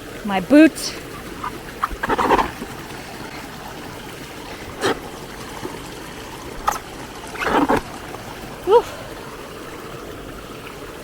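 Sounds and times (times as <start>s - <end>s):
water trickling and flowing: 0.0s - 11.0s
short splashes: 6.5s - 8.0s.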